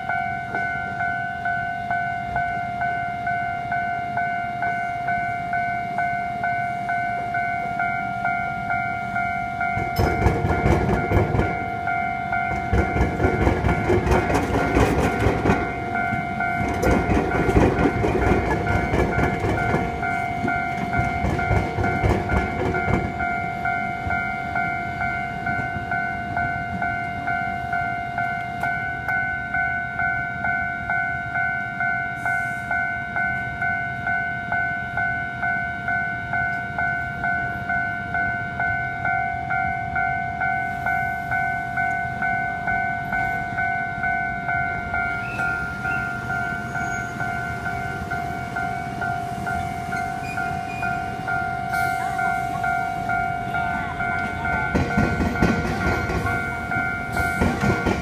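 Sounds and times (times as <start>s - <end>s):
level-crossing bell ringing: 0.0s - 58.0s
train wheels clattering: 9.7s - 23.5s, 45.0s - 58.0s.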